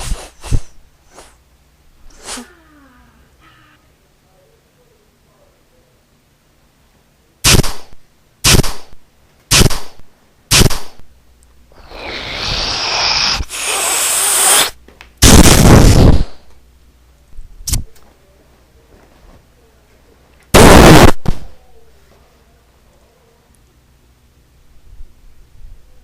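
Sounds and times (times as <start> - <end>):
gunshot sound effects: 7.4 - 8.9, 9.5 - 11.0, 15.2 - 16.3, 20.6 - 21.5
loud blast: 14.6 - 16.4, 20.6 - 21.5.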